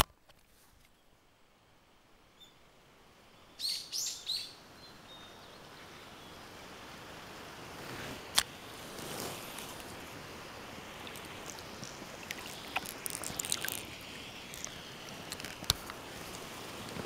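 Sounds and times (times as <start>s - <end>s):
faint hiss: 0.3s - 17.0s
bird chirping: 3.4s - 6.5s, 10.4s - 15.7s.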